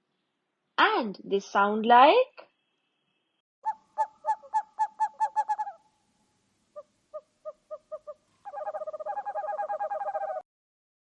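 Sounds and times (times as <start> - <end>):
owl hooting: 3.6 - 5.9, 6.7 - 10.4.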